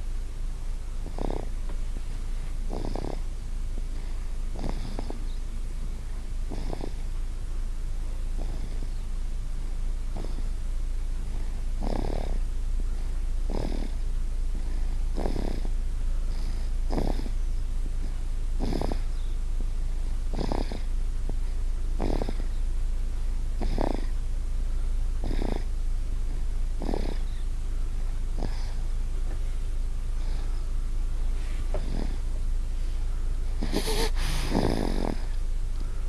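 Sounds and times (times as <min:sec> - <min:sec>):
steady low hum: 0:00.0 - 0:36.0
child snoring: 0:01.0 - 0:01.6, 0:02.7 - 0:03.3, 0:03.9 - 0:05.4, 0:06.4 - 0:07.1, 0:08.3 - 0:09.0, 0:10.1 - 0:10.6, 0:11.2 - 0:12.5, 0:13.4 - 0:14.0, 0:14.6 - 0:17.4, 0:18.6 - 0:19.2, 0:20.0 - 0:22.6, 0:23.6 - 0:24.2, 0:25.2 - 0:25.7, 0:26.3 - 0:27.4, 0:28.3 - 0:28.9, 0:30.2 - 0:30.6, 0:31.7 - 0:32.3, 0:33.5 - 0:35.4.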